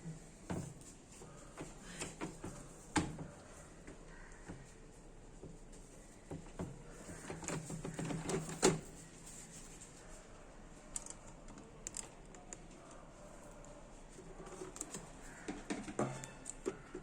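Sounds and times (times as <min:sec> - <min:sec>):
rustling and light clicks: 0:00.4 - 0:17.0.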